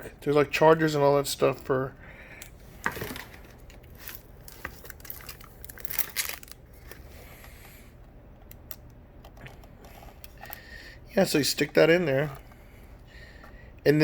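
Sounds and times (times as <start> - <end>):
packaging crinkling and rustling: 2.8 - 7.8.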